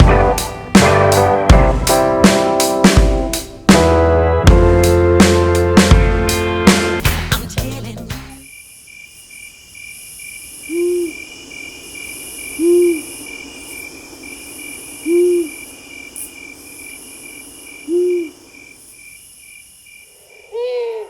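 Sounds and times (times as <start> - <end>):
insects chirping: 8.3 - 21.0
owl hooting: 10.6 - 18.7, 20.1 - 21.0.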